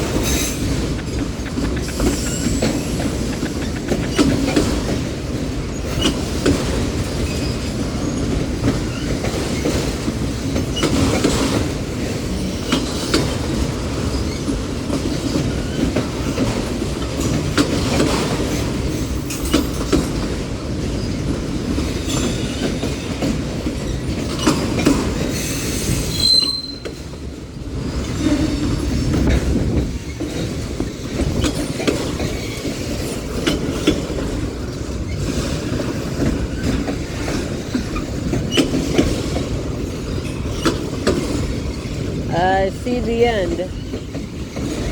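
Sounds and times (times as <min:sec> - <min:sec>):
wheels clacking over rail joints: 0:00.0 - 0:42.3, 0:43.7 - 0:44.9
train wheels rumbling on rail: 0:00.0 - 0:44.9
high-pitched wheel squeal: 0:26.1 - 0:26.9.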